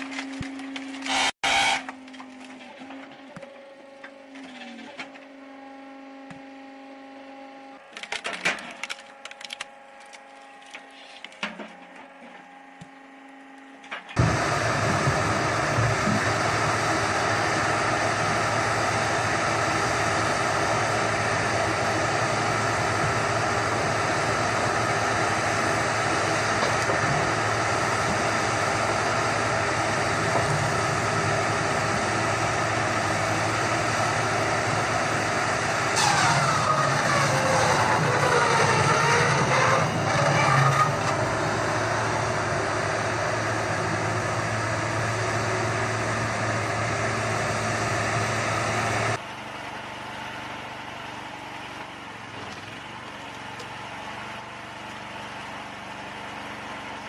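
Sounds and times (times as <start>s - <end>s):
wood cracking and splintering: 7.8s - 11.4s
loud engine running: 11.8s - 57.0s
steady machine hum: 12.3s - 49.2s.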